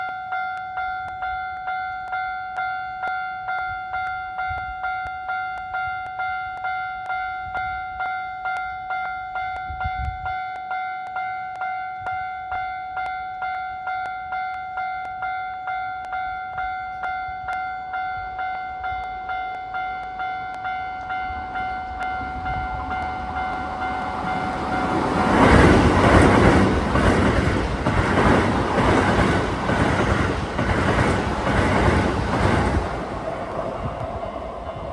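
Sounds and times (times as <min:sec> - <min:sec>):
level-crossing warning bell: 0:00.0 - 0:34.9
train rumble and wheel clatter: 0:16.0 - 0:34.9.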